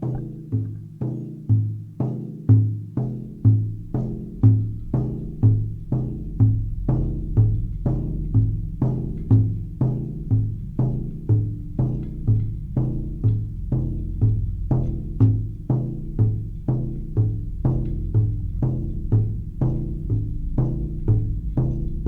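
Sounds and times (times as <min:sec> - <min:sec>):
low pitched drum strokes: 0:00.0 - 0:22.0.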